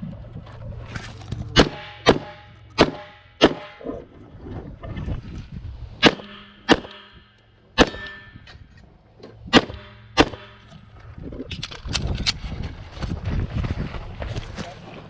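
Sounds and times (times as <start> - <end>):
pistol shots: 1.6 - 3.8, 6.0 - 8.3, 9.5 - 10.6
metallic ring of steel targets: 1.6 - 4.0, 6.0 - 8.9, 9.5 - 11.0.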